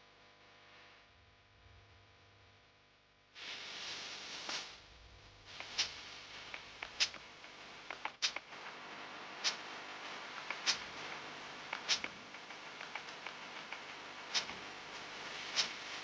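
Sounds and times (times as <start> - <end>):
faint ticks: 5.5 - 8.5.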